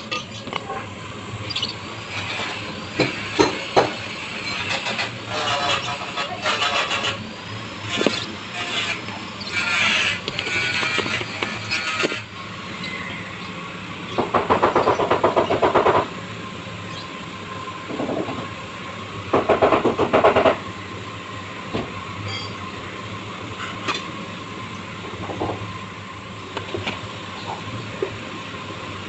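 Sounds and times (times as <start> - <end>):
grinder whining: 1.5 - 13.5.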